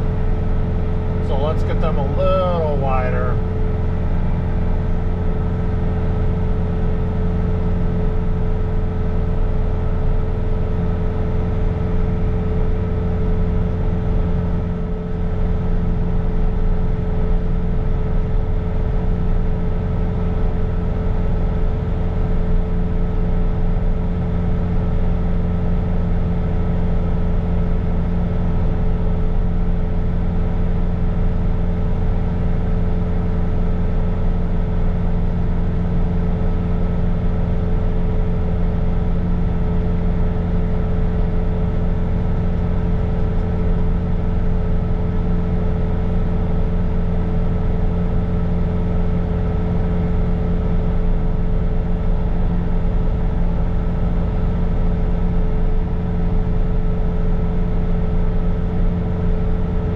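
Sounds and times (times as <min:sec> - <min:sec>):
diesel engine running: 0:00.0 - 0:08.8
snow blower whine: 0:01.2 - 0:03.4.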